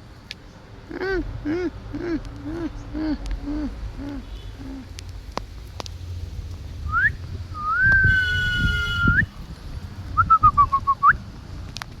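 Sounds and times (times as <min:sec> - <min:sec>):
person whistling: 0:06.9 - 0:08.2, 0:10.2 - 0:11.2.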